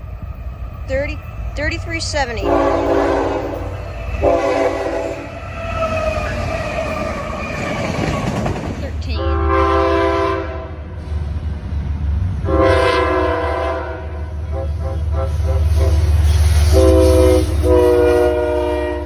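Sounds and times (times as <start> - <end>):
train rumbling past: 0.0 - 19.0
locomotive air horn: 2.4 - 5.4, 9.1 - 10.9, 12.4 - 19.0.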